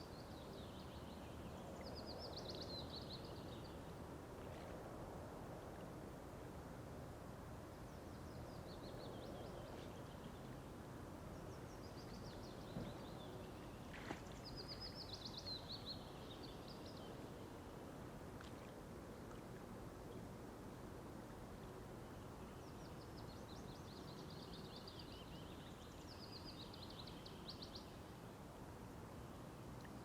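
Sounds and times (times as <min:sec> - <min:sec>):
faint outdoor hiss: 0:00.0 - 0:30.0
songbird singing: 0:07.7 - 0:17.5, 0:22.0 - 0:28.3.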